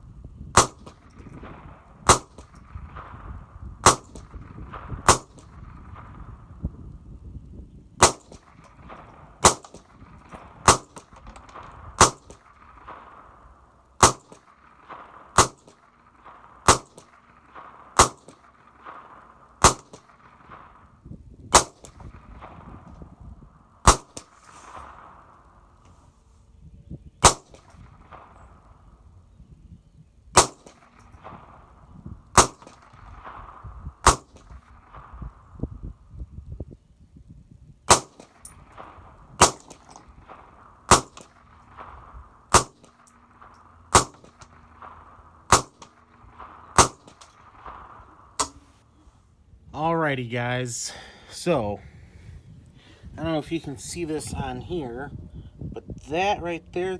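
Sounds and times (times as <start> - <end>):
rifle shots with echo: 0.5 - 7.0, 8.0 - 25.8, 27.2 - 29.2, 30.3 - 36.1, 37.9 - 49.0.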